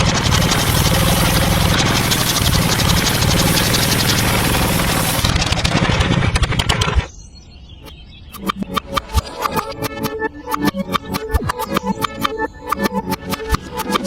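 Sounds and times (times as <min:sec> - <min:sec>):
small motor ticking: 0:00.0 - 0:07.1, 0:09.5 - 0:14.0.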